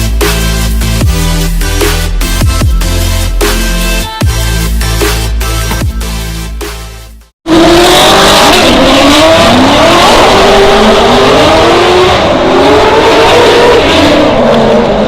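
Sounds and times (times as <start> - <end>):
car engine revving hard: 7.4 - 15.0.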